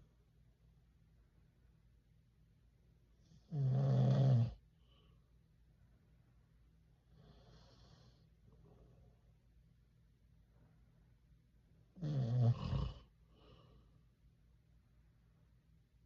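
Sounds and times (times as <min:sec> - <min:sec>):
man snoring: 0:03.4 - 0:04.6, 0:12.0 - 0:13.1.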